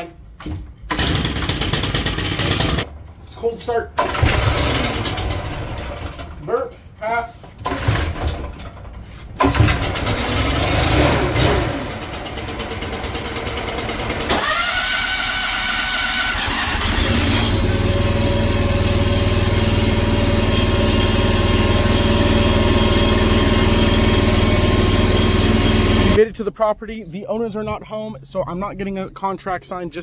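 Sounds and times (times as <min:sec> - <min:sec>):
small gasoline engine starting: 0:00.9 - 0:02.9, 0:04.0 - 0:06.4, 0:07.6 - 0:26.2.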